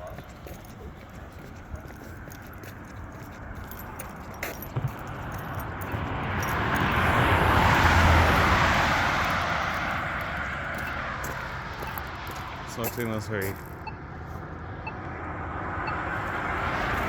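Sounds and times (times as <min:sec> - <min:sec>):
car driving past: 0:05.0 - 0:12.8.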